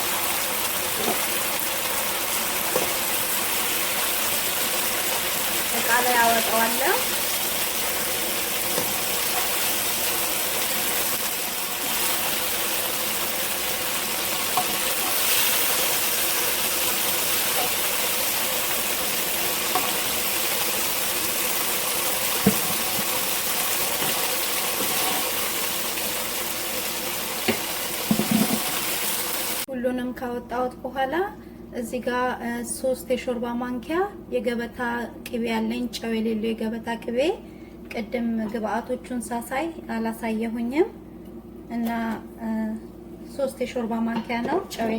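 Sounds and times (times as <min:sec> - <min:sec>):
chicken sizzling in oil: 0:00.0 - 0:29.7.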